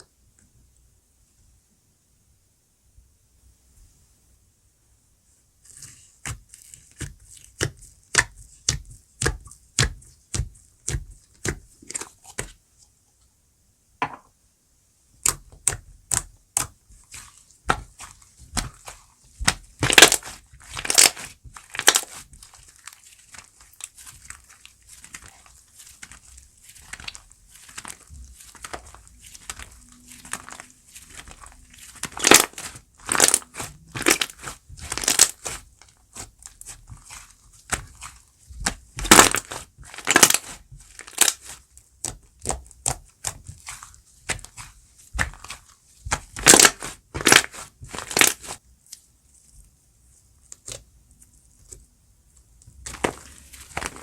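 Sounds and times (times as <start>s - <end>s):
slime crackling pops: 19.4s - 22.2s, 26.8s - 35.6s, 37.7s - 43.7s, 45.2s - 48.6s.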